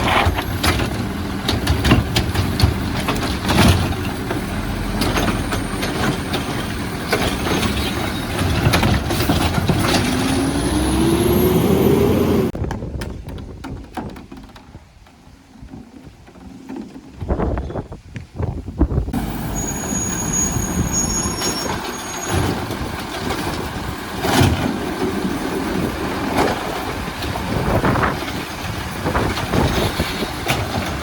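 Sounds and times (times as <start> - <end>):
garbage truck engine and hydraulics: 0.0 - 18.0, 19.0 - 31.0
rising whine: 9.8 - 12.6.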